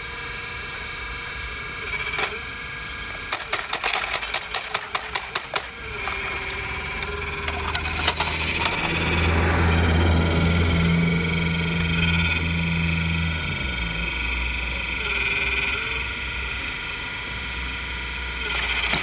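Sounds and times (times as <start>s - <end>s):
motors and pump humming: 0.0s - 19.0s.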